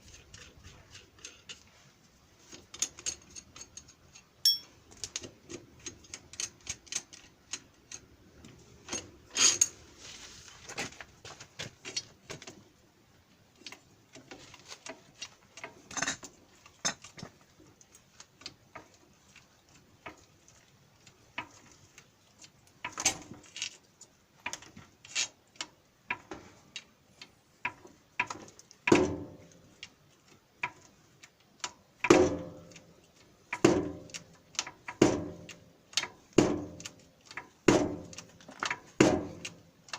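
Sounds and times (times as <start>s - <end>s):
ringing metal clanks: 4.5s - 4.8s.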